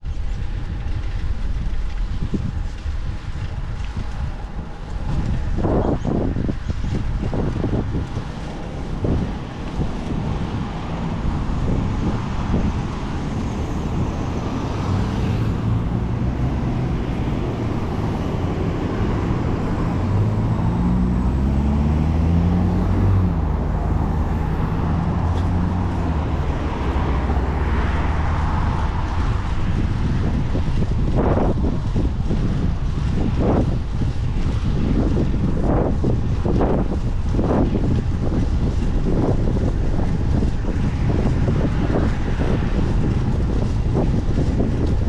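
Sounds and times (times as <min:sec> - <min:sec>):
motor vehicle engine hum: 0:00.0 - 0:45.0
wind and road rumble: 0:00.0 - 0:45.0.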